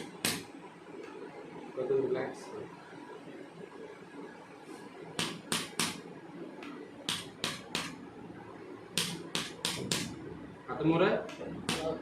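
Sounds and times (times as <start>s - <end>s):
hands slapping a body: 7.1s - 8.0s, 9.0s - 10.1s.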